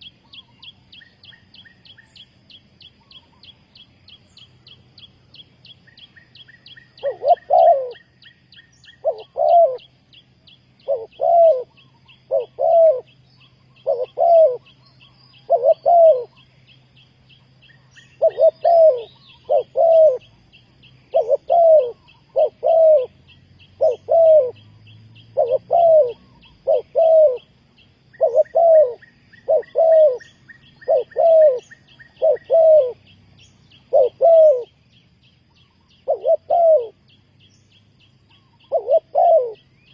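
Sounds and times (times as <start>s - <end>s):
dove cooing: 5.9s - 10.1s, 10.7s - 16.6s, 17.4s - 20.4s, 21.1s - 27.5s, 28.1s - 34.8s, 35.6s - 37.2s, 38.3s - 39.9s.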